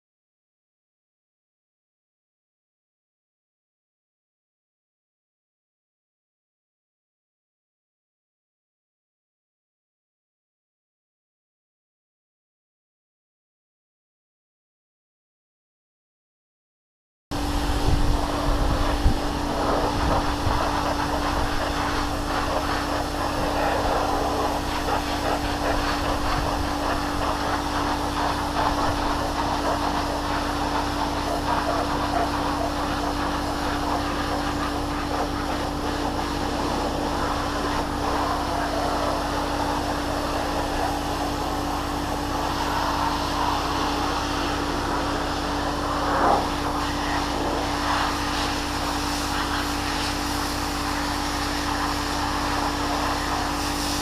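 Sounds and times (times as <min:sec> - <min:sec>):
steam cleaner motor hum: 0:17.3 - 0:54.0
steam spray hissing: 0:17.4 - 0:54.0.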